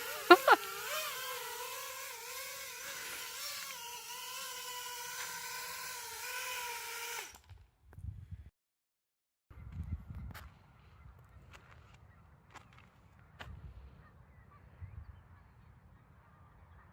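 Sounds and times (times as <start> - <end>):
quadcopter motors whining: 0.0 - 7.5.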